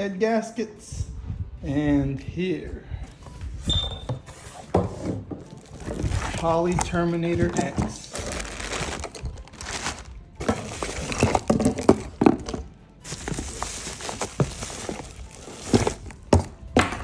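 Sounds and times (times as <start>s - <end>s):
box knocks and clicks: 4.1s - 17.0s
paper and plastic rustling: 4.2s - 16.9s.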